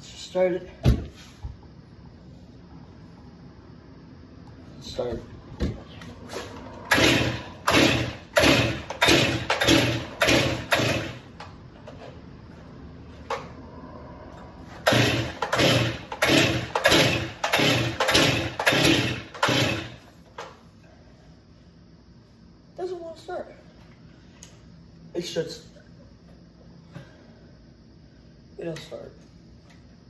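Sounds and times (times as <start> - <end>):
chainsaw engine cranking: 6.9 - 11.4, 14.8 - 20.1
chainsaw starter cord pulls: 6.9 - 11.4, 14.8 - 20.0.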